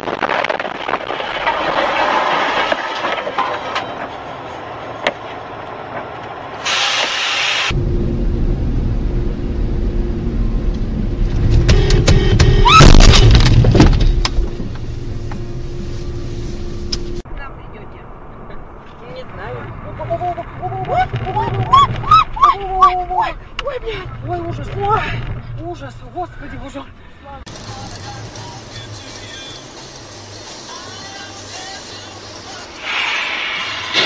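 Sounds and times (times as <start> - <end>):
low engine and road rumble: 0.0 - 34.0
road and wind noise hiss: 4.0 - 11.5, 14.2 - 20.7, 25.0 - 34.0
rising squeal: 20.0 - 23.2, 32.8 - 34.0.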